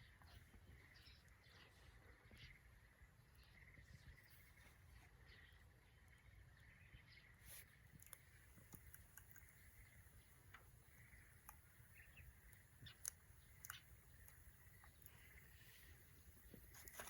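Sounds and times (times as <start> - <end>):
wood fire crackling: 7.5 - 17.0.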